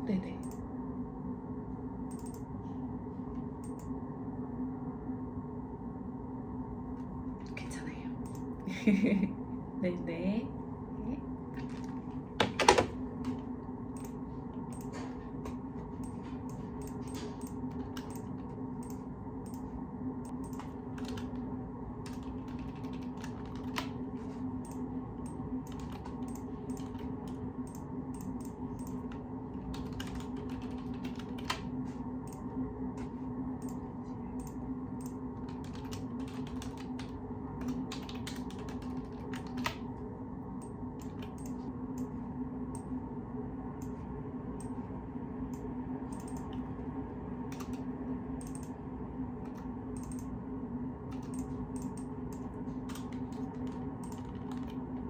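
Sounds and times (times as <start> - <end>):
steady low hum: 0.0 - 55.0
typing on computer keyboard: 16.8 - 19.0, 20.3 - 21.4, 22.0 - 24.0, 24.7 - 31.7, 34.4 - 39.8, 41.0 - 41.6, 48.4 - 48.7, 49.5 - 50.3, 51.1 - 55.0.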